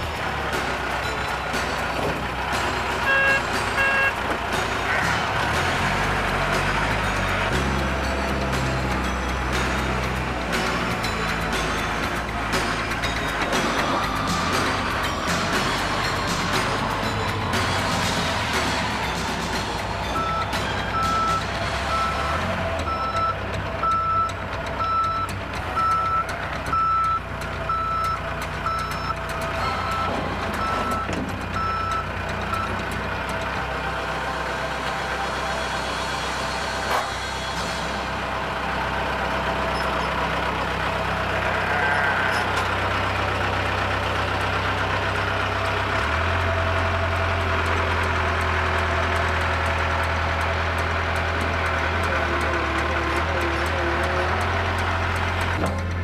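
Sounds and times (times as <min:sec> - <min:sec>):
diesel engine running: 0:00.0 - 0:56.0
reversing alarm beeping: 0:03.0 - 0:04.2, 0:19.9 - 0:32.9.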